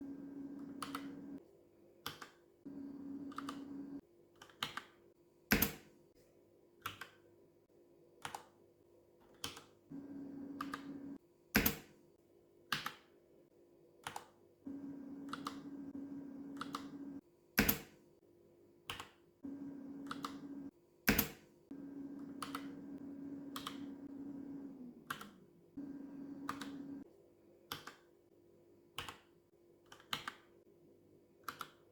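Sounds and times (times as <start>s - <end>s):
low steady hum: 0.0s - 1.4s, 2.7s - 4.0s, 9.9s - 11.2s, 14.7s - 17.2s, 19.4s - 20.7s, 21.7s - 27.0s.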